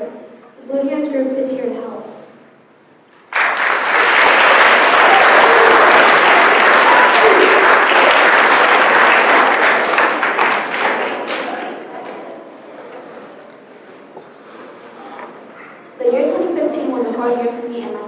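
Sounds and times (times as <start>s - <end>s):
crowd applauding: 3.1s - 13.2s.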